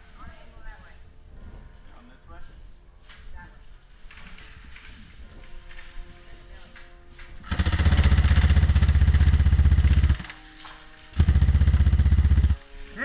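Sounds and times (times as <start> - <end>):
airsoft gun firing full auto: 7.4 - 10.5, 11.2 - 12.6.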